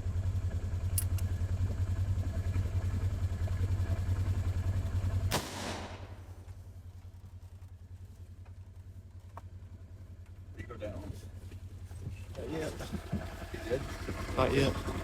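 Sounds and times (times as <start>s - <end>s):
vehicle engine idling: 0.0s - 15.0s
gunshot cracking and echoing: 5.3s - 6.4s.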